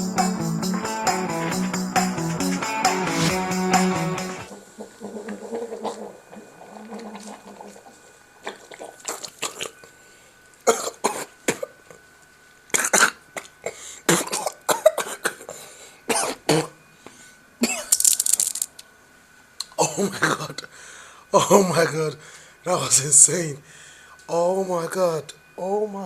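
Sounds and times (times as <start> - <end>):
person coughing and sputtering: 10.7 - 11.7, 12.8 - 15.4, 17.6 - 17.9.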